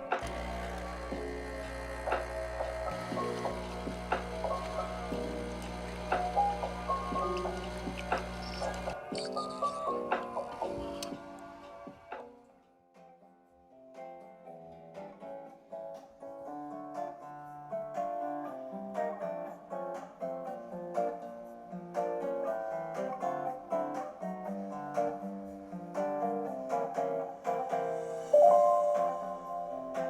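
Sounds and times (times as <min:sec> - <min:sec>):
plucked string melody: 0:12.9 - 0:30.0.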